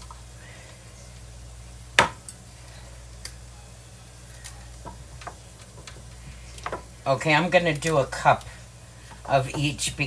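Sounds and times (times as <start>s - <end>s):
low steady hum: 0.0s - 10.0s.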